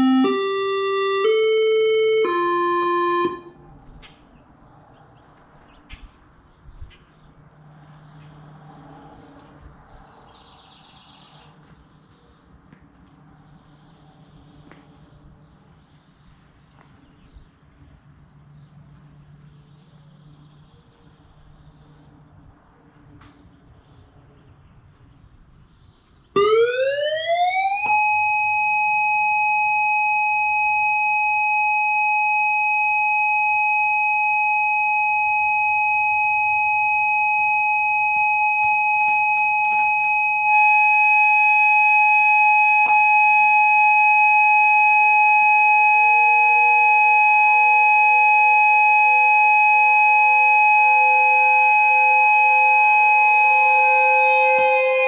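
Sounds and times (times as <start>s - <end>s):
lower pitched siren winding up: 0.0s - 3.9s, 26.4s - 55.0s
electronic siren through speaker: 0.0s - 4.1s, 26.4s - 55.0s.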